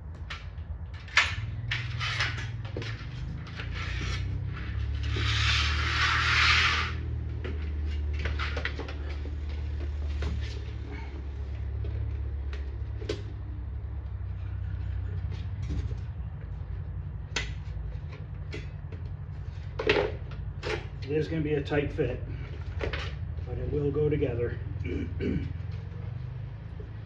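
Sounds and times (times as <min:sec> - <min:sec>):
clicks and knocks of parts handled: 0:00.0 - 0:05.2
steady low hum: 0:00.0 - 0:27.0
short hissing rasp: 0:05.1 - 0:07.0.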